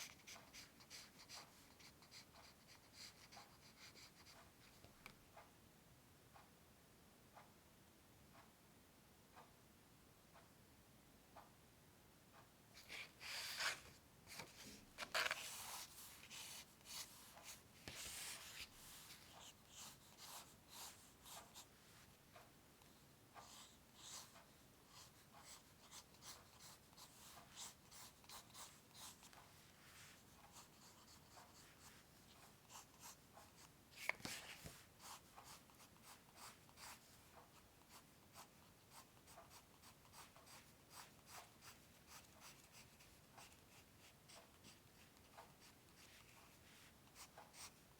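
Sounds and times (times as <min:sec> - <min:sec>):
drawing tool scratching on paper: 0:12.8 - 0:21.7, 0:23.4 - 0:29.4, 0:30.0 - 0:37.1, 0:37.8 - 0:47.8.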